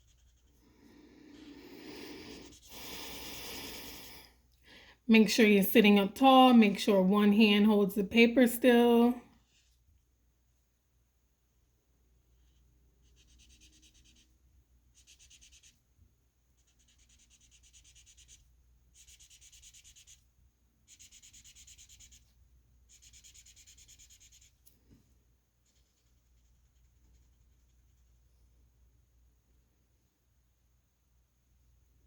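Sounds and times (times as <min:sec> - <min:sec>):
marker scratching on paper: 0:00.0 - 0:00.6, 0:02.0 - 0:03.0, 0:12.4 - 0:24.7, 0:25.6 - 0:28.2.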